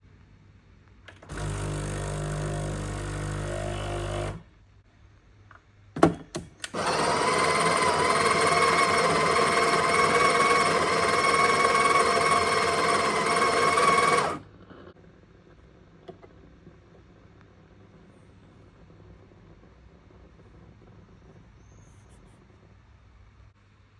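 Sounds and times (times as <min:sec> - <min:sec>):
espresso machine humming: 0:01.1 - 0:04.4, 0:06.8 - 0:14.4
espresso machine whirring: 0:01.1 - 0:04.4, 0:06.6 - 0:14.4.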